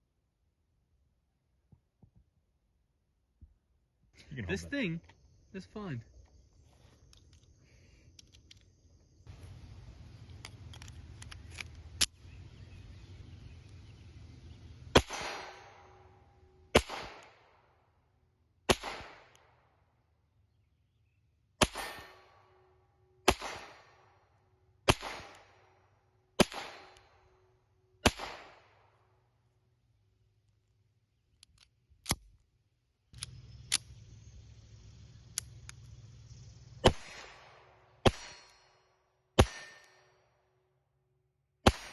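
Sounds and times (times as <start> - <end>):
gun handling clicks: 7.0 - 8.8, 10.1 - 12.2, 30.4 - 32.5
pistol shots with echo: 14.9 - 16.0, 16.7 - 17.6, 18.7 - 19.4, 21.6 - 22.3, 23.2 - 24.0, 24.9 - 25.6, 26.4 - 27.1, 28.0 - 28.9, 36.8 - 38.5, 39.4 - 40.0, 41.6 - 41.9.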